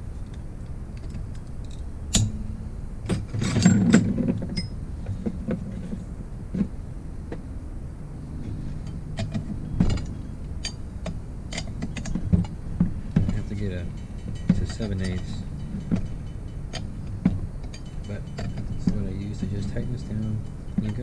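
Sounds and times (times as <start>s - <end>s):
low steady hum: 0.0s - 21.0s
metal clatter: 0.3s - 6.6s, 8.4s - 21.0s
metal tools clinking on engine parts: 3.0s - 4.8s, 8.4s - 21.0s.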